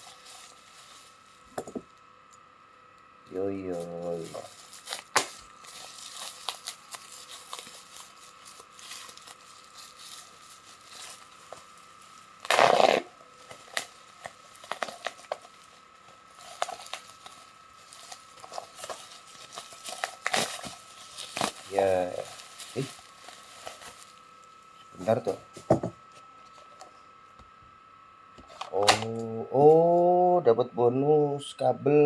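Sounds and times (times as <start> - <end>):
packaging ripping: 3.6 - 24.2, 28.5 - 29.2
packaging clicks and rustles: 3.6 - 24.4, 28.4 - 29.2.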